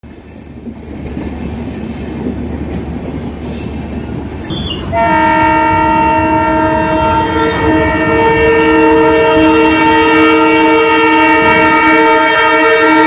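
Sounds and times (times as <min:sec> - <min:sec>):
train rumbling past: 0:00.0 - 0:13.0
locomotive air horns blasting: 0:04.7 - 0:13.0.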